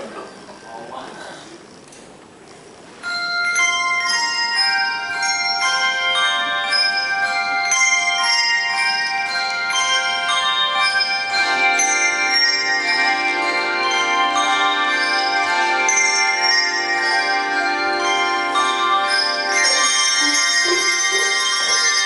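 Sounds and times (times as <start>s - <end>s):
handbells ringing: 3.0s - 22.0s.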